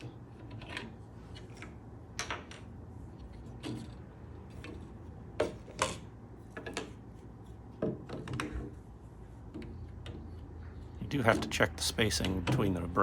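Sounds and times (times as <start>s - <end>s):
small knocks: 12.2s - 12.8s.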